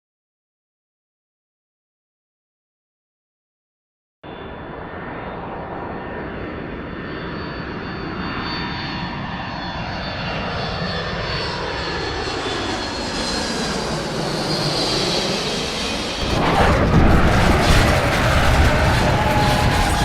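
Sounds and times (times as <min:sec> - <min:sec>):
low-flying airplane engine: 0:04.2 - 0:20.0.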